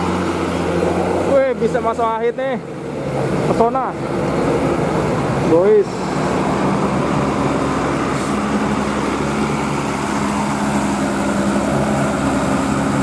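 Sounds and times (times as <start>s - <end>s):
bus diesel engine drone: 0.0s - 13.0s.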